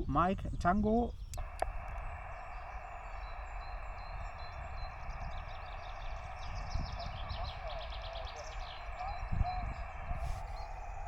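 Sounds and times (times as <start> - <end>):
birds chirping faintly: 0.0 - 11.0
short clicks: 1.3 - 2.3
radio static hiss: 1.4 - 11.0.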